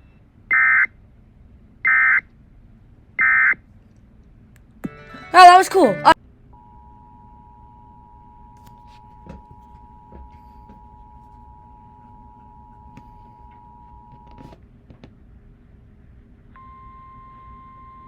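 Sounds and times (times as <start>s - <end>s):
single steady alarm tone: 6.6s - 14.4s, 16.6s - 18.0s.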